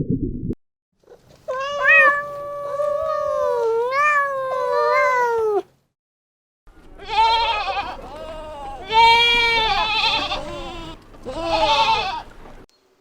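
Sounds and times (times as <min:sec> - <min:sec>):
cat meowing: 0:01.5 - 0:05.7, 0:07.0 - 0:12.2.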